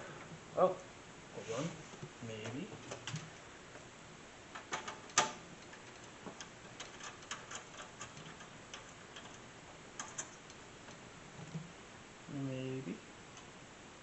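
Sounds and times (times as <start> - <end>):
light clicks and ticks: 4.6 - 11.6, 13.3 - 13.5.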